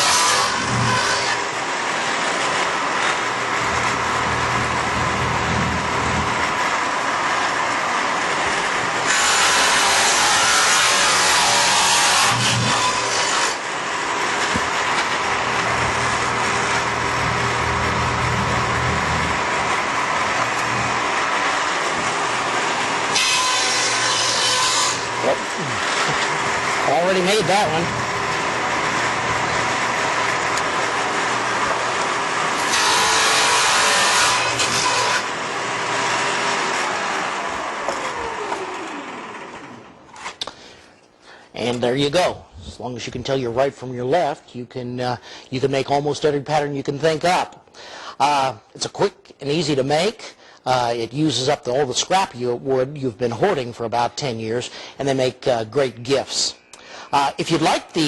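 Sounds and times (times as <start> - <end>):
table saw cutting wood: 0.0 - 40.6.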